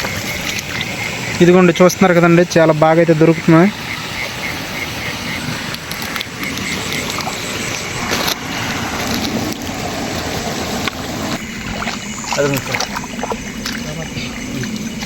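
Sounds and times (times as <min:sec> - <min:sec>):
rushing water: 0:00.0 - 0:15.0.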